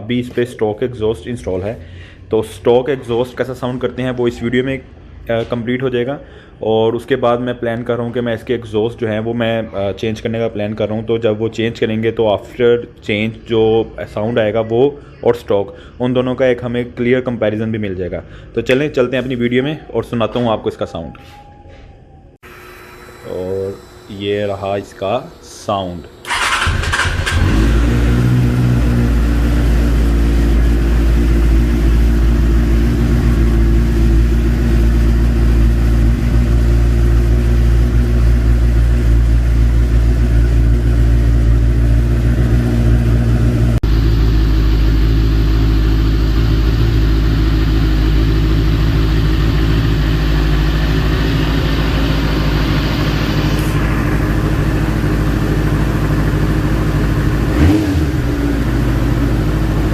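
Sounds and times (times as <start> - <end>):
motorcycle engine idling: 26.2 - 59.9.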